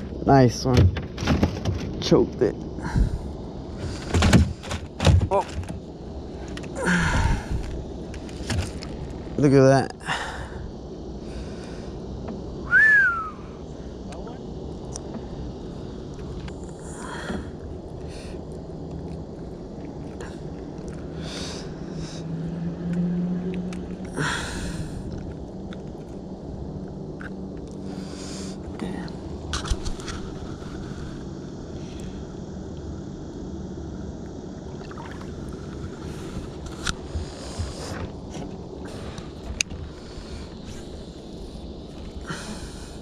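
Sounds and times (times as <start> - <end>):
low hum: 10.2 - 43.0.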